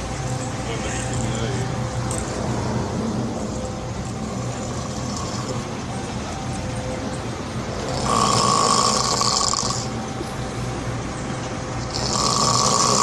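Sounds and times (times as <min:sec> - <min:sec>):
low background rumble: 0:00.0 - 0:10.8
man snoring: 0:02.6 - 0:05.8, 0:07.8 - 0:09.9, 0:11.9 - 0:13.0.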